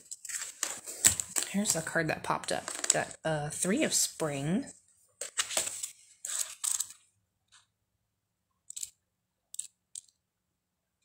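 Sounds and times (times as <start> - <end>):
paper pages rustling: 0.0 - 1.9, 2.5 - 3.2, 5.2 - 7.0.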